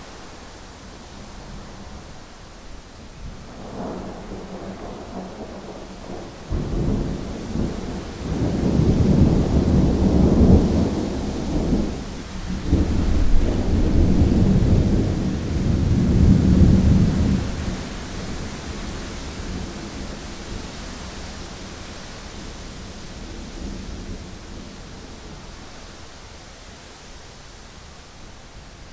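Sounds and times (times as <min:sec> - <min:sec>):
rolling thunder: 0:03.2 - 0:21.8.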